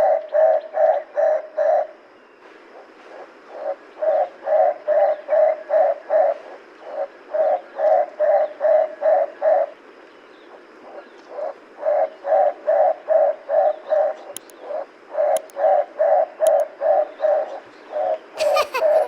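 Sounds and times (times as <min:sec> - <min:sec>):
sliding cartoon sound effect: 0:18.4 - 0:19.0.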